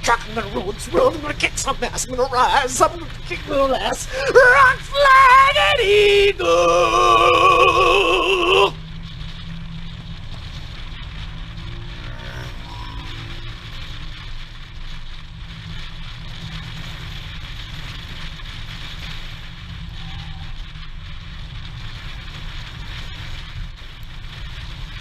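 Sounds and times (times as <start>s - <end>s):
vehicle moving with low rumble: 0.0s - 25.0s.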